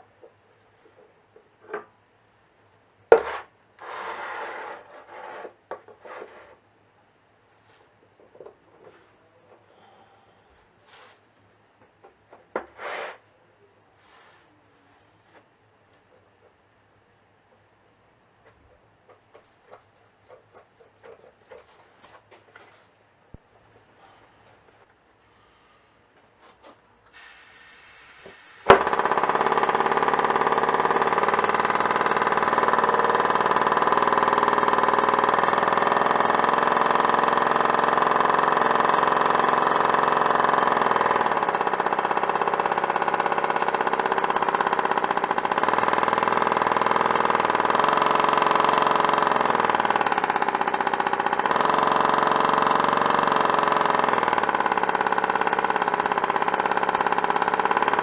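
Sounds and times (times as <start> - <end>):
compressed-air engine running: 28.7 - 58.0.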